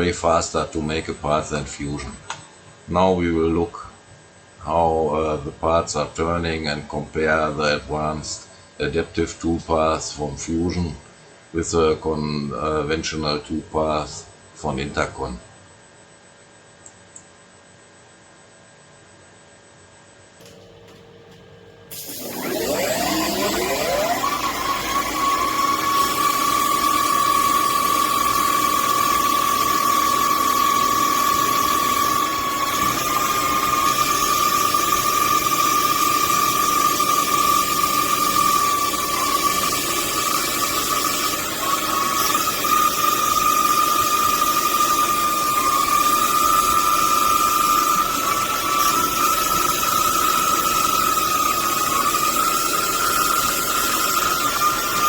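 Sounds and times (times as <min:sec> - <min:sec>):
machining noise: 0:20.4 - 0:55.0
spindle motor high whine: 0:20.4 - 0:55.0.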